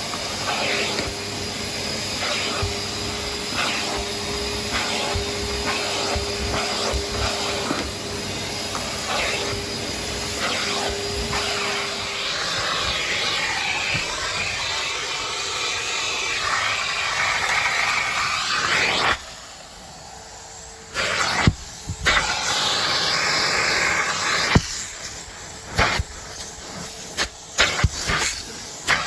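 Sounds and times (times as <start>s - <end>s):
vacuum cleaner suction hiss: 0.0s - 29.0s.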